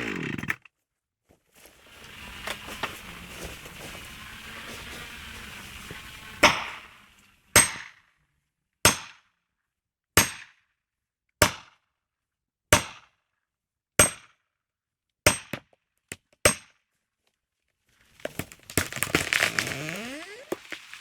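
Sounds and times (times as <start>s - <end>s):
tree crashing through branches: 1.6s - 7.7s, 18.0s - 21.0s.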